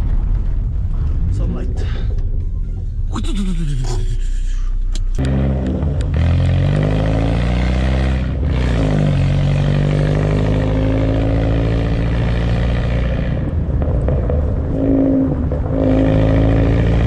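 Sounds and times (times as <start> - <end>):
car engine revving hard: 5.2 - 13.6, 14.7 - 17.0.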